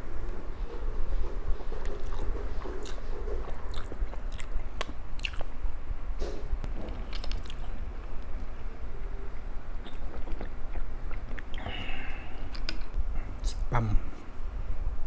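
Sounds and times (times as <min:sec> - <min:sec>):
chewing with crisp crunches: 0:01.7 - 0:05.7, 0:06.6 - 0:13.0.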